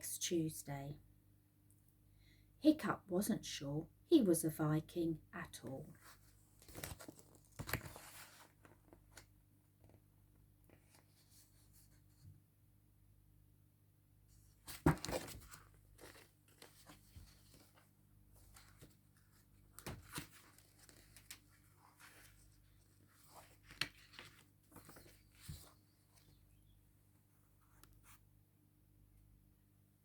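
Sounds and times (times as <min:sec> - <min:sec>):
paper pages rustling: 0:06.0 - 0:10.0, 0:14.7 - 0:26.4.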